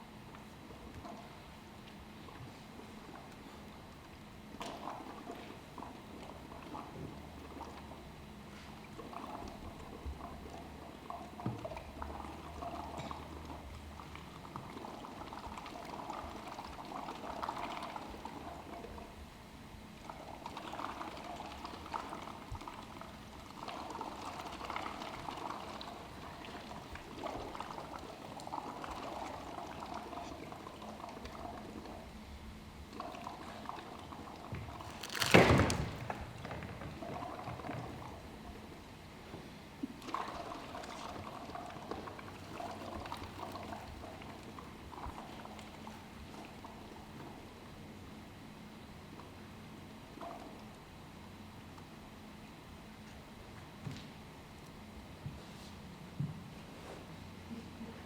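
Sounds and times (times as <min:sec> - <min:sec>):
water pouring and sloshing: 0:00.7 - 0:19.3, 0:19.9 - 0:32.1, 0:32.9 - 0:38.7, 0:39.8 - 0:47.6.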